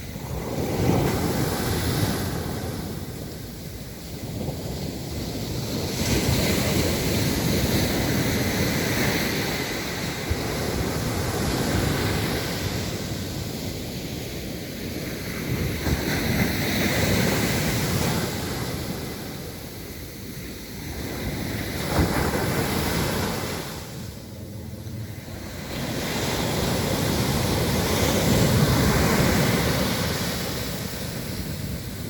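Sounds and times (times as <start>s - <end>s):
ocean waves breaking on beach: 0.0s - 32.0s
wind buffeting microphone: 0.0s - 32.0s.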